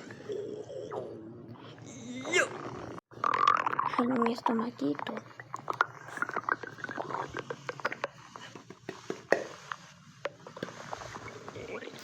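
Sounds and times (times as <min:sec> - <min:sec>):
stomach gurgling: 0:00.0 - 0:09.5, 0:10.5 - 0:12.0.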